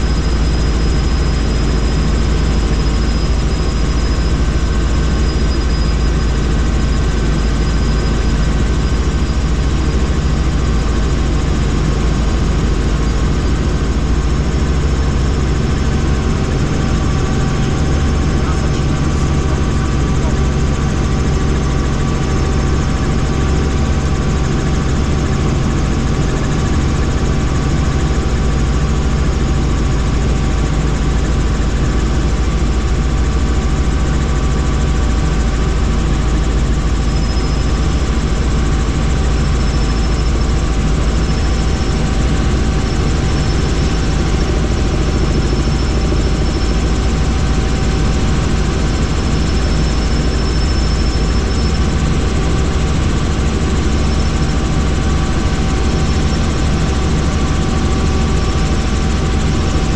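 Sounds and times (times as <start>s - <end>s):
faint high whine: 0.0s - 59.9s
helicopter engine and rotor noise: 0.0s - 59.9s.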